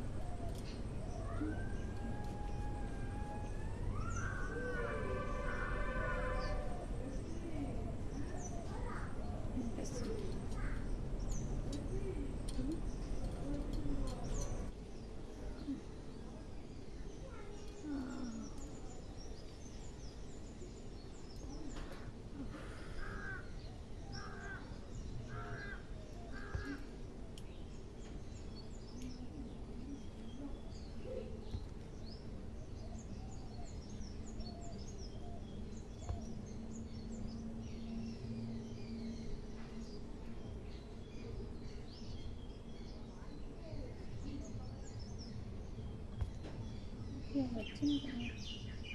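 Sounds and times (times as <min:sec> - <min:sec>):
bird calling: 0:00.0 - 0:14.7, 0:21.7 - 0:27.0
outdoor background noise: 0:00.0 - 0:48.9.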